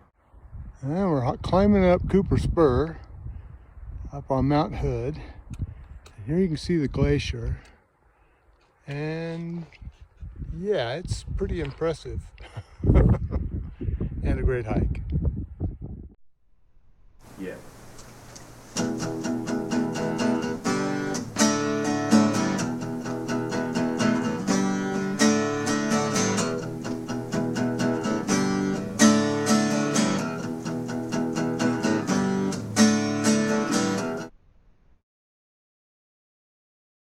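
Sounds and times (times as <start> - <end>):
acoustic guitar strumming: 17.6 - 34.3.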